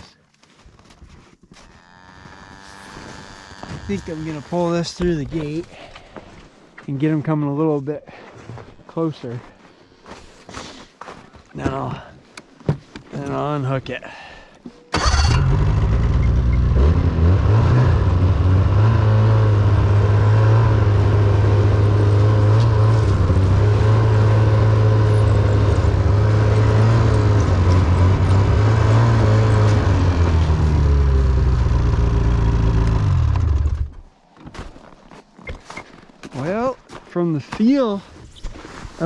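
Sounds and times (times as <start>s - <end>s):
snowmobile engine running: 2.2s - 5.7s, 15.0s - 34.0s.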